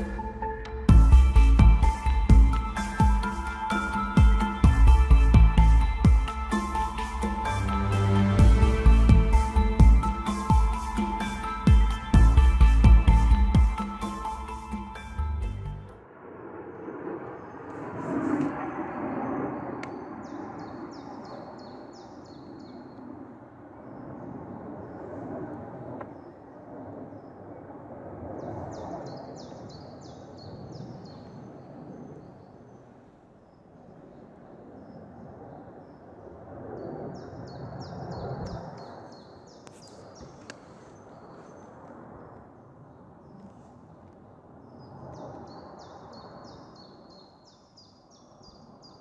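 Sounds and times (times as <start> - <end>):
low wavering noise: 0.0 - 21.6.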